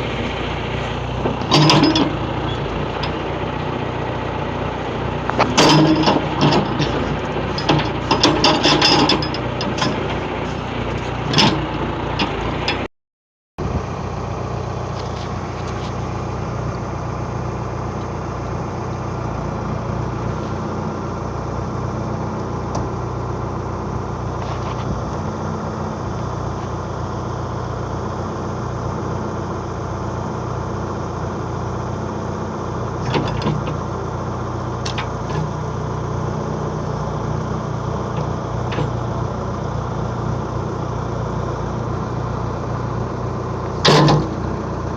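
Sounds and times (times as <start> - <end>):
backhoe diesel engine running: 0.0 - 12.9, 13.6 - 44.9
metallic clanks and crunches: 0.8 - 3.3, 5.3 - 12.9, 33.0 - 33.8, 34.8 - 35.7, 38.0 - 39.2, 43.7 - 44.9.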